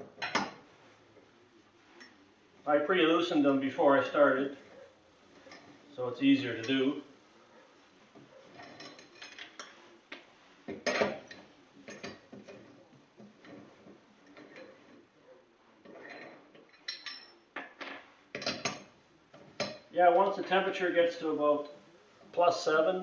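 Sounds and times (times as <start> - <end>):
lug wrench clinking on lug nuts: 16.0 - 17.8, 18.4 - 18.9.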